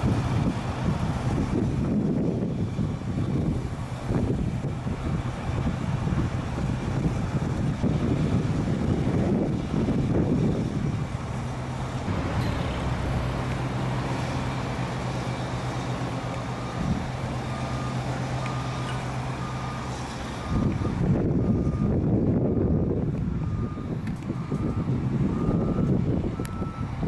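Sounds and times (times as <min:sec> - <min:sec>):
diesel machinery running: 0:00.0 - 0:27.0
low noisy rumble: 0:00.0 - 0:27.0
reversing alarm beeping: 0:12.0 - 0:27.0.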